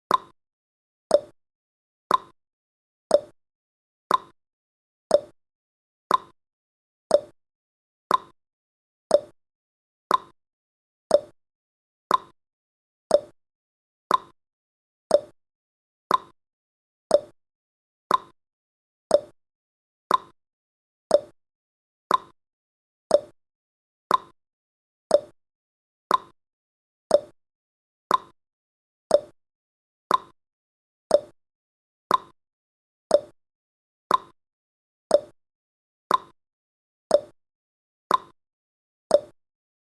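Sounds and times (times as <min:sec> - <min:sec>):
timer ticking: 0:00.1 - 0:00.3, 0:01.1 - 0:01.3, 0:02.1 - 0:02.4, 0:03.1 - 0:03.3, 0:04.1 - 0:04.4, 0:05.1 - 0:05.4, 0:06.1 - 0:06.4, 0:07.1 - 0:07.4, 0:08.1 - 0:08.4, 0:09.1 - 0:09.4, 0:10.1 - 0:10.4, 0:11.1 - 0:11.4, 0:12.1 - 0:12.4, 0:13.1 - 0:13.4, 0:14.1 - 0:14.4, 0:15.1 - 0:15.4, 0:16.1 - 0:16.4, 0:17.1 - 0:17.4, 0:18.1 - 0:18.4, 0:19.1 - 0:19.4, 0:20.1 - 0:20.4, 0:21.1 - 0:21.4, 0:22.1 - 0:22.4, 0:23.1 - 0:23.4, 0:24.1 - 0:24.4, 0:25.1 - 0:25.4, 0:26.1 - 0:26.4, 0:27.1 - 0:27.4, 0:28.1 - 0:28.4, 0:29.1 - 0:29.4, 0:30.1 - 0:30.4, 0:31.1 - 0:31.4, 0:32.1 - 0:32.4, 0:33.1 - 0:33.4, 0:34.1 - 0:34.4, 0:35.1 - 0:35.4, 0:36.1 - 0:36.4, 0:37.1 - 0:37.4, 0:38.1 - 0:38.4, 0:39.1 - 0:39.4.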